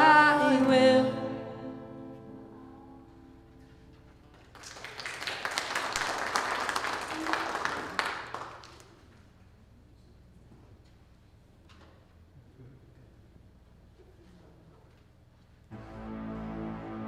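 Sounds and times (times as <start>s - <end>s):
audience applauding: 4.5s - 9.0s
band final chord: 15.7s - 17.0s.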